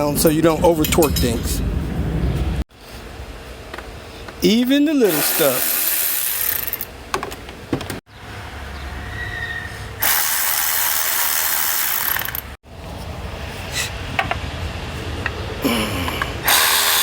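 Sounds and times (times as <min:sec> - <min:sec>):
cordless power ratchet spinning: 0:05.1 - 0:06.9, 0:10.0 - 0:12.6, 0:16.4 - 0:17.0.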